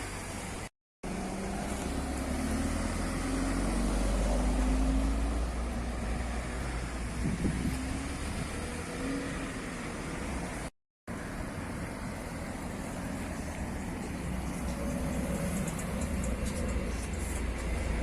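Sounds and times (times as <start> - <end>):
car engine rumbling at low revs: 0.0 - 18.0.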